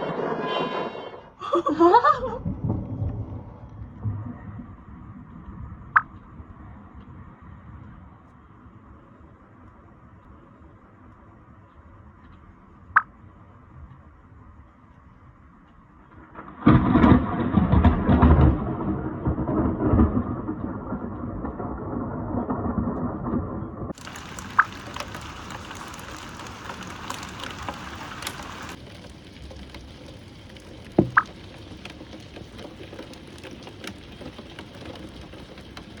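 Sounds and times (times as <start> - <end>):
thunderclap rumbling: 2.0 - 8.2, 16.1 - 36.0
raindrops ticking: 23.9 - 36.0
steady rain hissing: 23.9 - 36.0.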